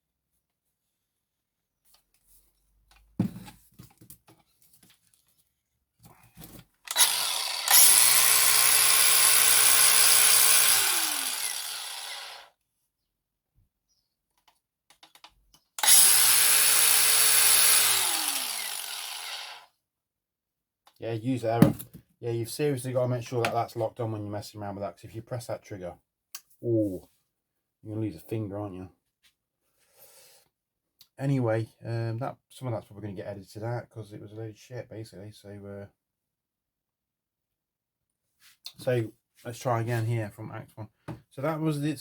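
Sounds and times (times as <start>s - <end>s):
angle grinder running: 6.9s - 12.5s, 15.8s - 19.7s.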